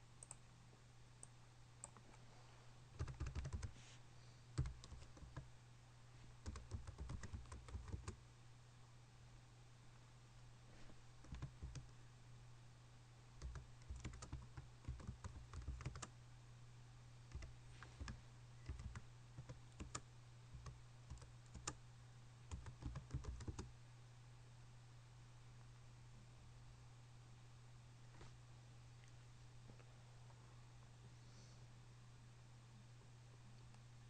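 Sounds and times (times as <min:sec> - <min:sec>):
steady low hum: 0:00.0 - 0:34.0
computer keyboard typing: 0:03.0 - 0:03.7, 0:04.6 - 0:05.5, 0:06.4 - 0:08.2, 0:11.2 - 0:11.9, 0:13.4 - 0:16.1, 0:17.3 - 0:21.8, 0:22.5 - 0:23.7.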